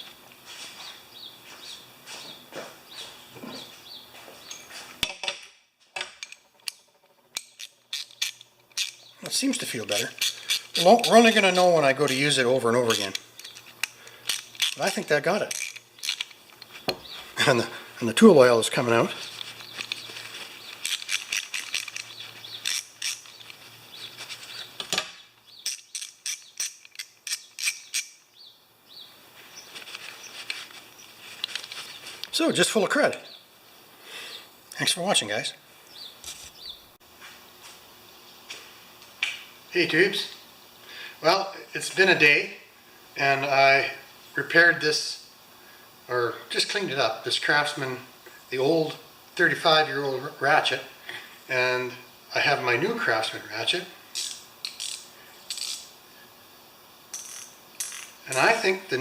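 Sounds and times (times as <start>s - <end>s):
small bird chirping: 0.8s - 4.8s, 6.4s - 14.9s, 15.9s - 17.4s, 21.6s - 31.2s, 35.8s - 36.9s
ratchet clicking: 6.2s - 9.1s, 9.9s - 16.4s, 20.7s - 23.5s, 25.6s - 28.2s, 54.2s - 55.9s.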